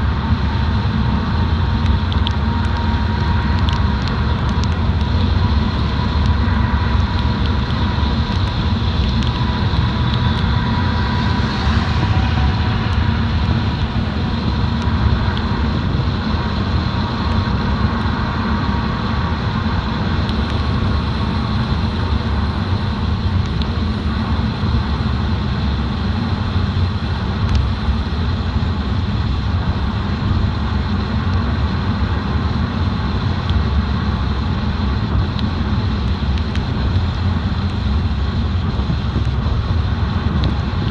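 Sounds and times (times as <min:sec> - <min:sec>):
car driving rumble: 0:00.0 - 0:40.9.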